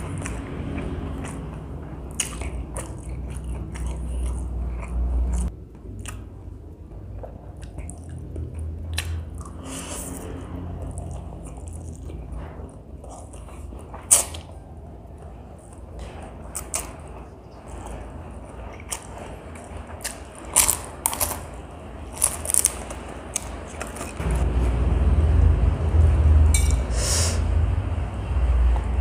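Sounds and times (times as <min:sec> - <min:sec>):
person chewing noodles: 0:00.0 - 0:24.2
low steady hum: 0:00.0 - 0:29.0.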